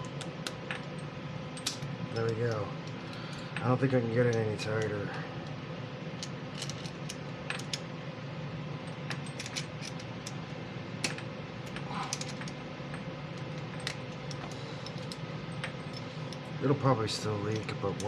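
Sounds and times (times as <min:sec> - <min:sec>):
steady low hum: 0:00.0 - 0:18.0
light metallic clicks and clinks: 0:01.6 - 0:05.2.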